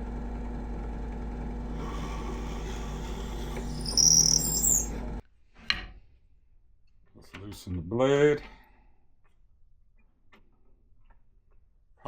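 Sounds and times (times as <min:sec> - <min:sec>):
power drill boring into wood: 0:01.4 - 0:05.2
drill bit squealing: 0:01.7 - 0:05.2.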